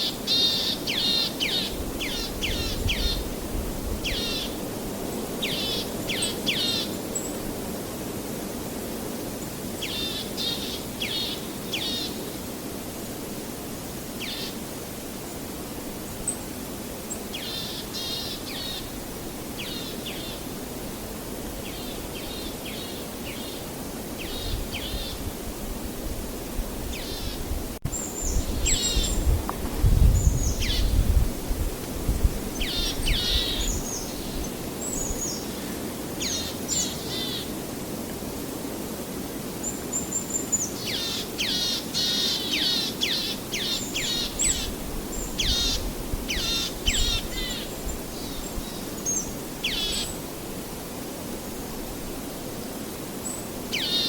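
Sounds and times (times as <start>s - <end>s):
small birds chirping: 0.0s - 3.3s, 26.9s - 29.4s, 32.5s - 37.5s, 39.6s - 50.2s.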